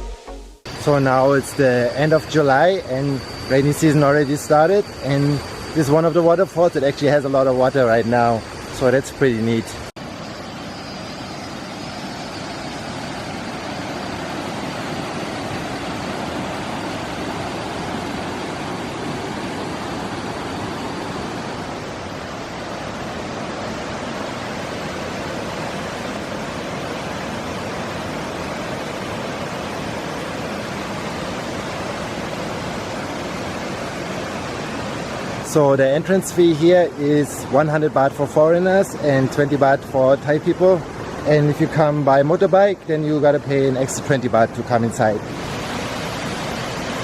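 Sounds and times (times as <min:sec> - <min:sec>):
waterfall rushing: 0:44.8 - 0:47.0.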